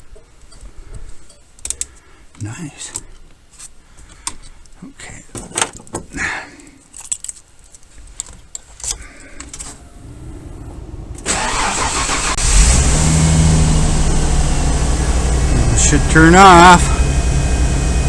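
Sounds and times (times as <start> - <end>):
truck engine starting and running: 9.6 - 18.0.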